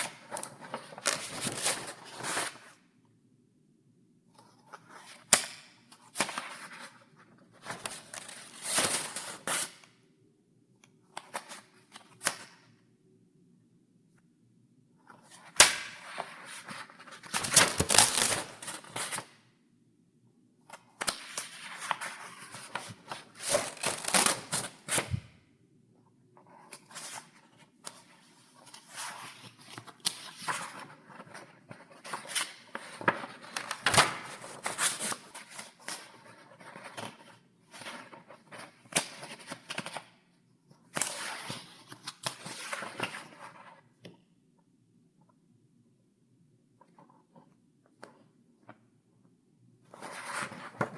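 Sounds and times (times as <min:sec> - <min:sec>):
paper pages turning: 0:00.0 - 0:02.6, 0:16.0 - 0:19.2, 0:21.3 - 0:25.3.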